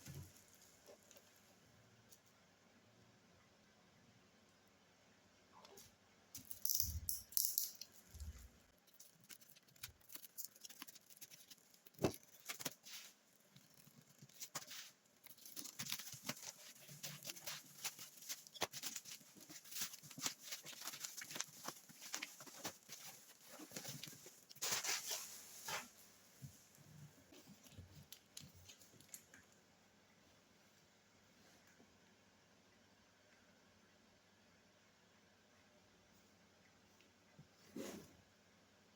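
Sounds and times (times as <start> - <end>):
packaging crinkling and rustling: 7.8 - 26.0.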